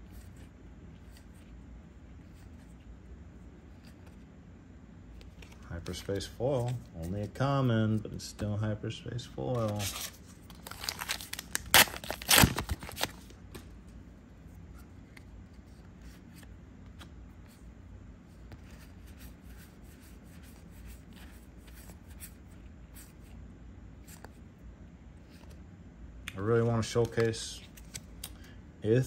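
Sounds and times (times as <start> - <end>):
cards flipped through: 0.0 - 1.5, 3.7 - 4.2, 5.2 - 7.5, 9.5 - 13.8, 14.8 - 17.6, 25.2 - 25.6, 26.3 - 28.5
packaging rustling: 9.6 - 13.4.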